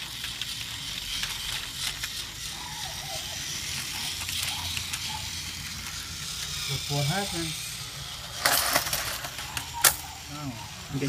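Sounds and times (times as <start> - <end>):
light clicks of toy train: 0.0 - 2.2, 3.6 - 5.1
toy train motor buzzing: 0.0 - 11.0.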